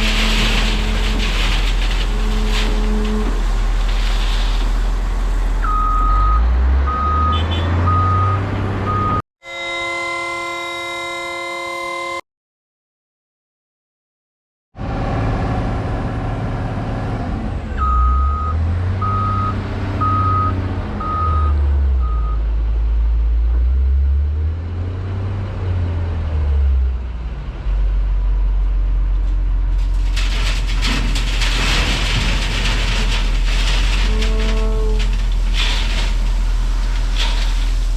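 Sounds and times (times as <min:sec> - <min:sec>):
rock pouring: 0:00.0 - 0:05.4, 0:29.8 - 0:37.9.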